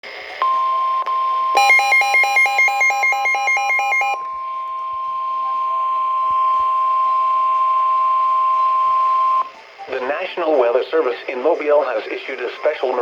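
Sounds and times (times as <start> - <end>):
two-tone warbling alarm beeps: 0.4 - 9.5
steady loud alarm tone: 1.6 - 9.5.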